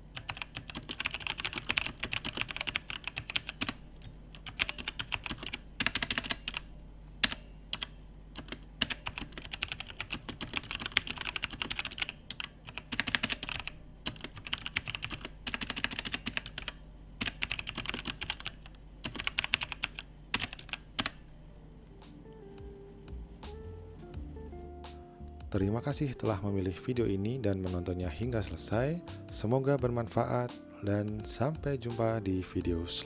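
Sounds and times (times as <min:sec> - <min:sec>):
mechanical keyboard typing: 0:00.2 - 0:21.2.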